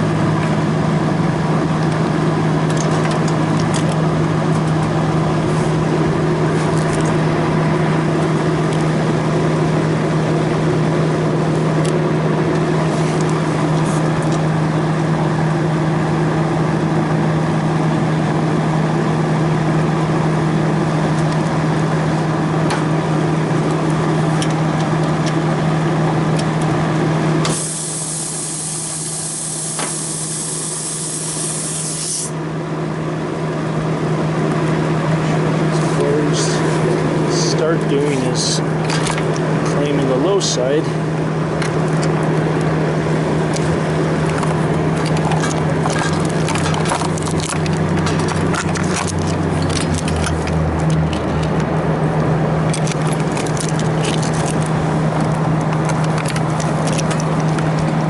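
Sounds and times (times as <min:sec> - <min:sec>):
machine humming with hiss: 0:27.3 - 0:32.4.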